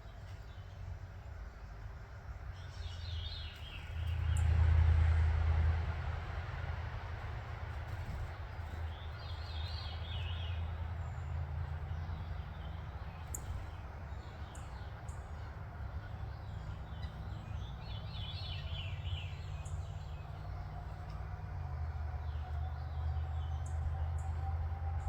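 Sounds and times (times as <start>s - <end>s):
low background rumble: 0.0s - 25.0s
birds chirping and singing: 8.1s - 25.0s.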